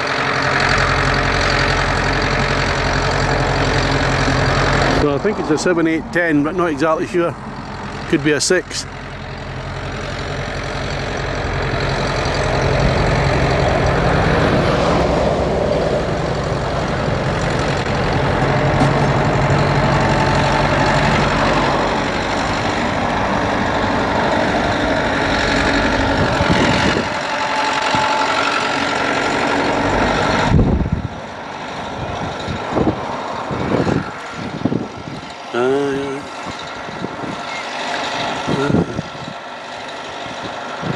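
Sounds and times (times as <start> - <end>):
tractor diesel engine working: 0.0 - 40.9
wind buffeting microphone: 9.8 - 40.9.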